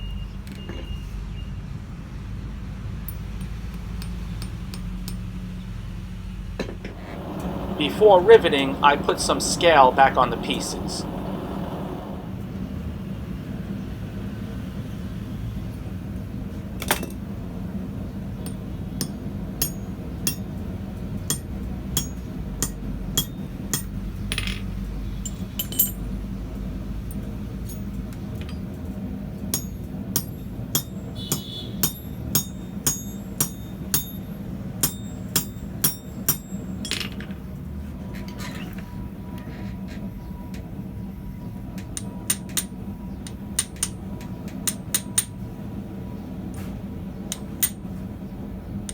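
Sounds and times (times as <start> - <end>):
hammer tapping metal rivet: 3.1 - 5.3, 29.6 - 34.2, 43.3 - 45.3
steady low hum: 6.4 - 14.2.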